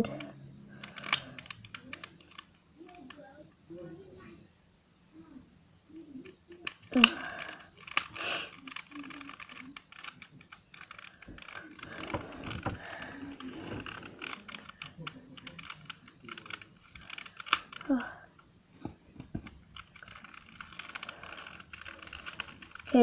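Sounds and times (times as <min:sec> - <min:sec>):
fingernails peeling stickers: 0:06.6 - 0:18.1, 0:18.8 - 0:23.0.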